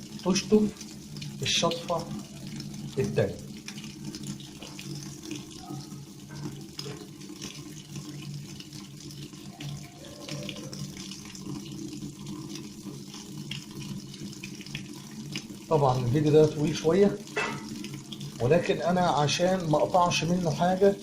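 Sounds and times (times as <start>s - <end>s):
water rushing into washing machine: 0.0s - 21.0s.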